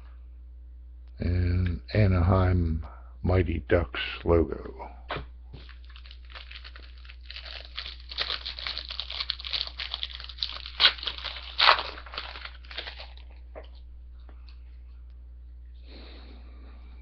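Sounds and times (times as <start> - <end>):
wrapper ripping: 5.6 - 13.8
wrapper crinkling: 5.6 - 13.9.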